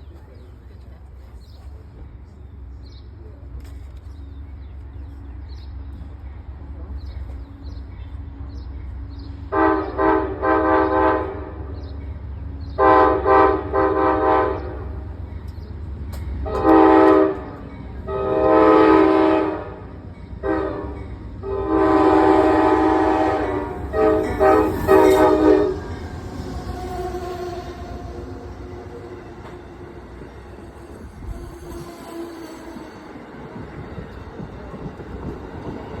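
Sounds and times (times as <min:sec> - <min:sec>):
low rumble of train: 0:00.0 - 0:36.0
train air horn blasts: 0:09.5 - 0:11.7, 0:12.8 - 0:15.0, 0:16.4 - 0:33.1.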